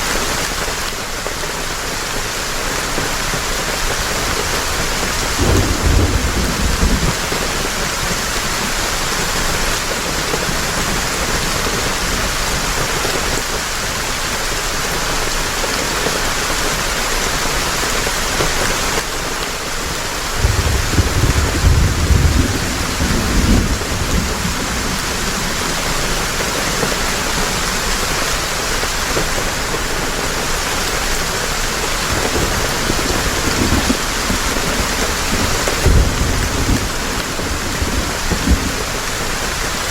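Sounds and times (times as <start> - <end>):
heavy rain hissing: 0.0 - 39.9
thunder rumbling: 4.3 - 12.4, 20.2 - 39.9.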